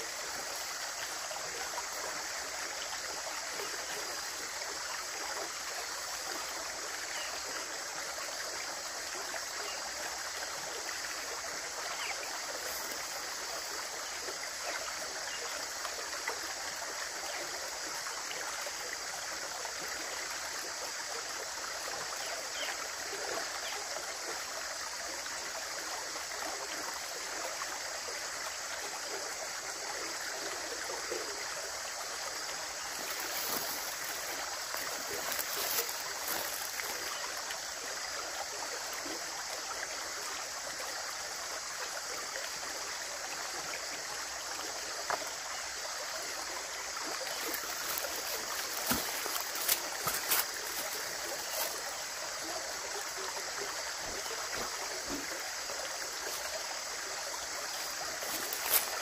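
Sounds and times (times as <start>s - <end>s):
running water rushing: 0.0s - 59.0s
water splashing and gurgling: 30.9s - 40.7s, 43.9s - 59.0s.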